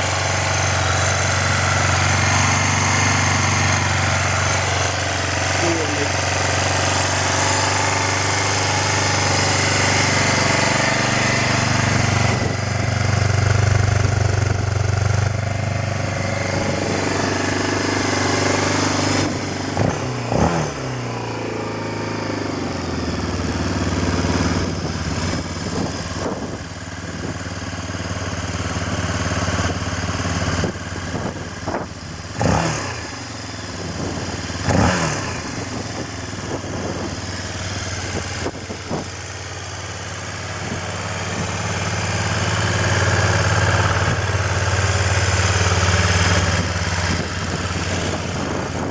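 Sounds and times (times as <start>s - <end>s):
motorcycle engine idling and revving: 0.0s - 48.9s.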